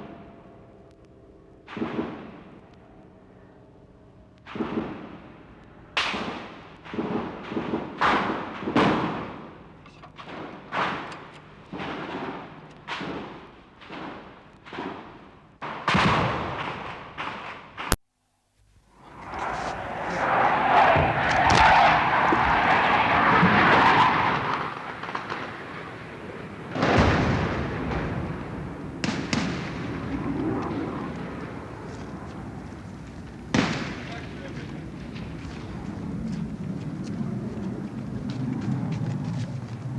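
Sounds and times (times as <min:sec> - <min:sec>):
crowd roaring and shouting: 0:19.1 - 0:27.5.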